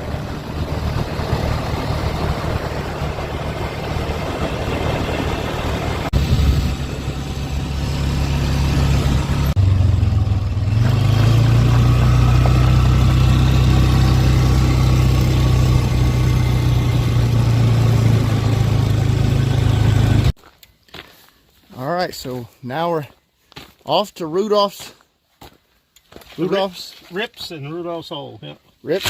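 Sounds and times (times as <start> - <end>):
vehicle engine running: 0.0 - 20.4.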